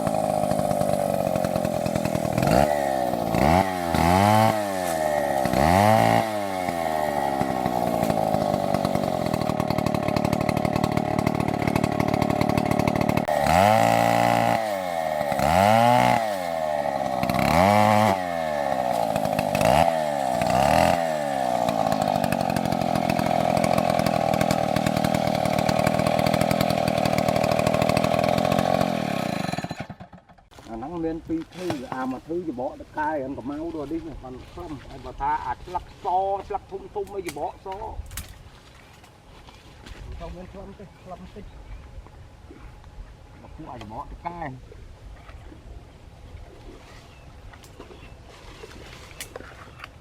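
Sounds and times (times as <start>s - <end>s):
chainsaw revving: 0.0s - 30.6s.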